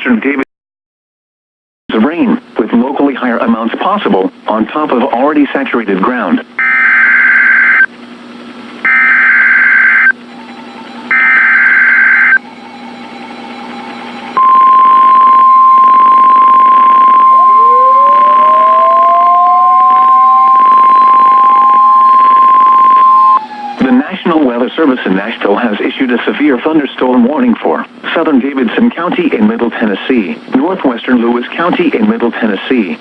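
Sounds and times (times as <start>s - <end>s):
steady warning alarm tone: 6.6s - 7.9s, 8.8s - 24.0s
faint rising tone: 10.3s - 23.8s.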